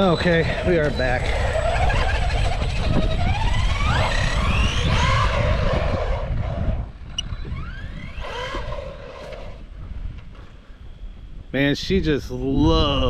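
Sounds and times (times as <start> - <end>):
electric motor whining: 0.0 - 9.8
wind buffeting microphone: 0.0 - 13.0.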